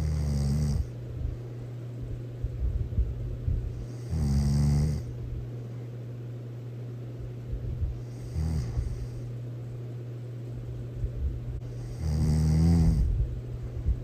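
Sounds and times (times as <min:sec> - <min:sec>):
person snoring: 0:00.0 - 0:00.9, 0:03.8 - 0:05.1, 0:08.0 - 0:09.3, 0:11.8 - 0:13.1
low hum: 0:00.0 - 0:14.0.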